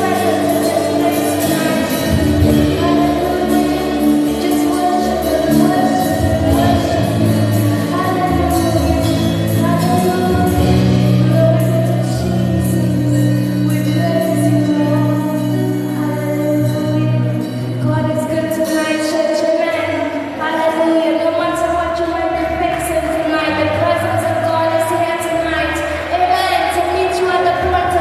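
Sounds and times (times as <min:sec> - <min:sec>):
church worship music with singing: 0:00.0 - 0:18.5.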